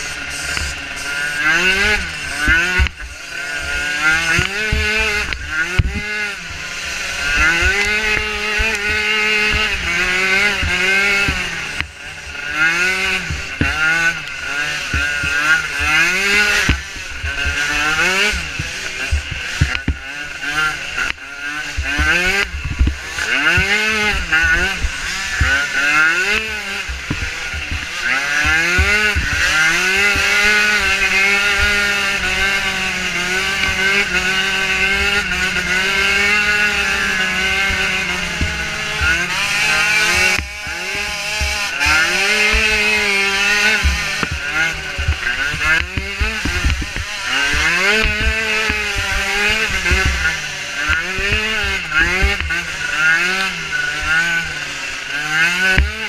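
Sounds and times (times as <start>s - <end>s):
small atv engine revving: 0.0s - 56.0s
thumps of vehicle bouncing: 12.6s - 54.5s, 55.2s - 56.0s.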